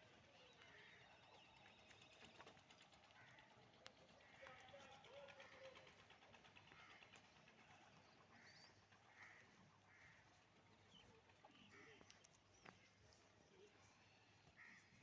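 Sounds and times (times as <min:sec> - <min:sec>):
quiet outdoor ambience: 0:00.0 - 0:15.0
faint bird calls: 0:08.3 - 0:15.0.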